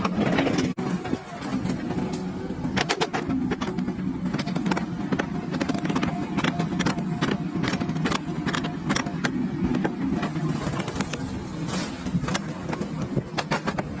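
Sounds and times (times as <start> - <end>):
machine engine running: 0.0 - 14.0
sharp clicks and knocks: 1.7 - 14.0.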